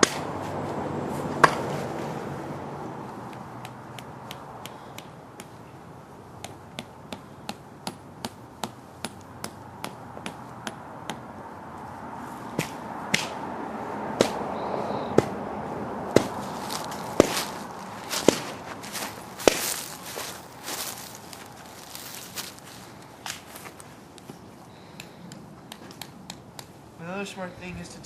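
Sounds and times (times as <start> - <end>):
hammering tent stake: 0.0 - 0.2, 3.3 - 5.6, 6.4 - 11.2, 12.6 - 13.4, 16.1 - 20.2, 25.0 - 26.8.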